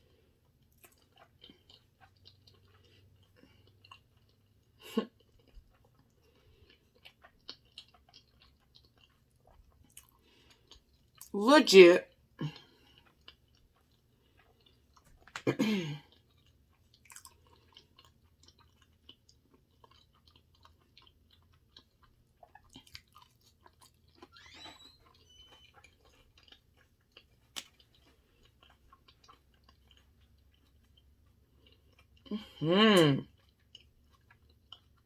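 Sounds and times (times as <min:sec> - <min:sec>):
chewing with wet mouth clicks: 0:00.0 - 0:11.3, 0:12.1 - 0:32.3, 0:33.0 - 0:35.0
person humming: 0:32.4 - 0:33.2.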